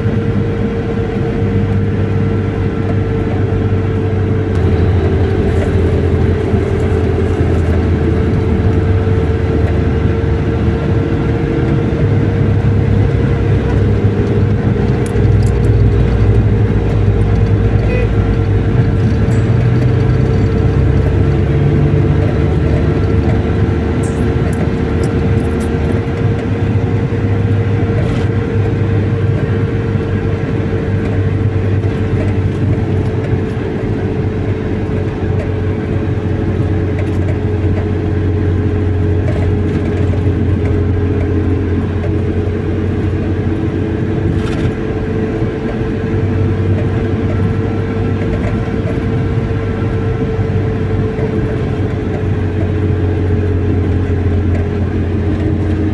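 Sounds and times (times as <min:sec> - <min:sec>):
car engine and road noise: 0:00.0 - 0:55.9
steady tone: 0:04.5 - 0:09.2.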